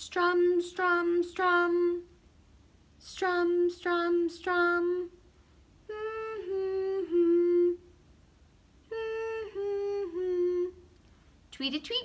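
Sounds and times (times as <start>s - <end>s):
woman humming: 5.9s - 7.9s, 8.9s - 10.9s.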